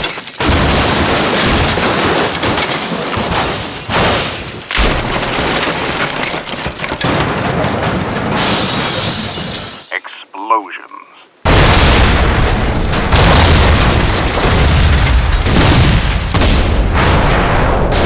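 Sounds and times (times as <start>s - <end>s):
heavy smashing impacts: 0.0s - 9.9s, 11.5s - 18.0s
glass shattering: 0.0s - 10.1s, 13.1s - 14.6s
booms: 11.4s - 18.0s.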